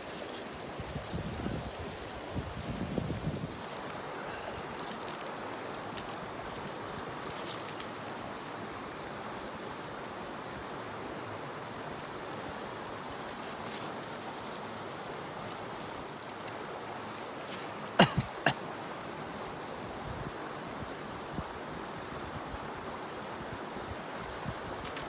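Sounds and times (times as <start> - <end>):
river rushing: 0.0 - 25.0.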